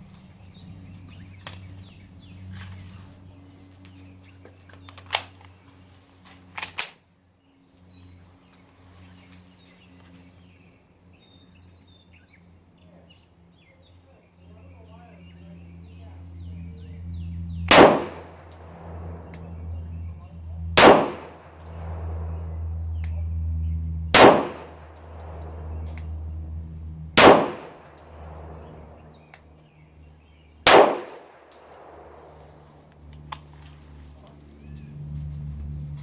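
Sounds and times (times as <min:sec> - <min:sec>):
steady low hum: 0:00.0 - 0:36.0
pistol shots: 0:17.7 - 0:19.3, 0:20.8 - 0:22.4, 0:24.1 - 0:26.0, 0:27.2 - 0:29.0, 0:30.6 - 0:32.4.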